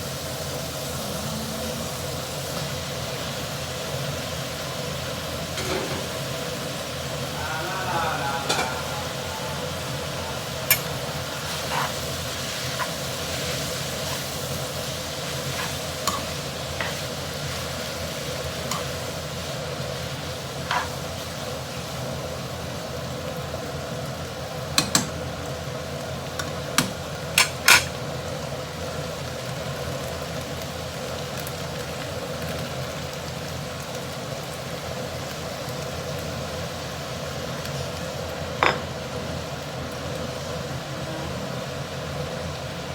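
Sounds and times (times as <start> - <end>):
noodles sizzling in a pan: 0.0 - 42.9
steady hum: 5.2 - 21.0
utensil clanking against pan: 5.5 - 6.2, 10.6 - 13.0, 15.3 - 17.1, 18.6 - 19.1, 24.8 - 25.2, 26.4 - 28.0.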